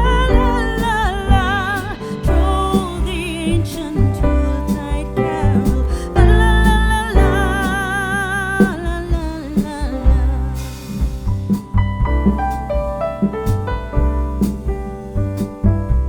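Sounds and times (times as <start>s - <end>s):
person singing with vibrato: 0.0s - 11.2s
bass: 0.0s - 16.0s
guitar: 0.0s - 16.0s
steady drum beat: 0.0s - 16.0s.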